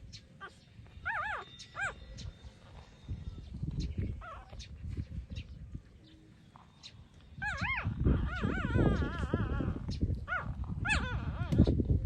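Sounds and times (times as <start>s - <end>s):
puppy whining: 0.4s - 2.9s, 4.1s - 4.7s, 7.4s - 11.8s.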